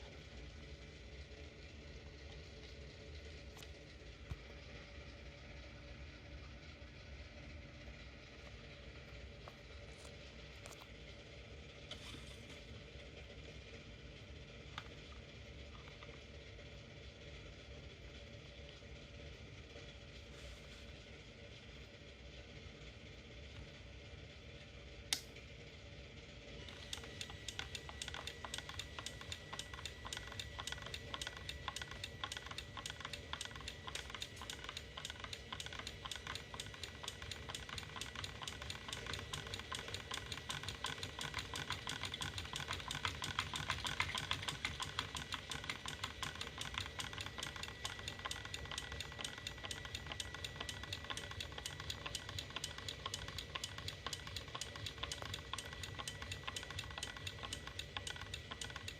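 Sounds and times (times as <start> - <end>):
machine rattling with high hum: 25.7 - 58.9.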